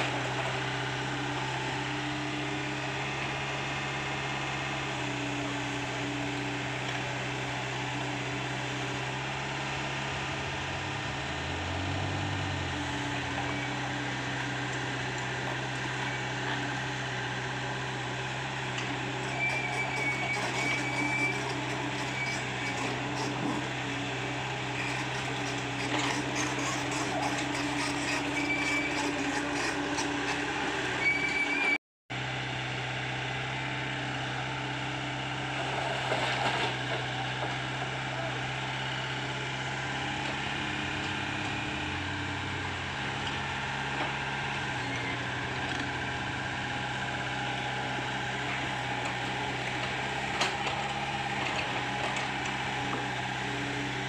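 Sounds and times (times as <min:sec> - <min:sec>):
excavator diesel engine running: 0:00.0 - 0:54.0.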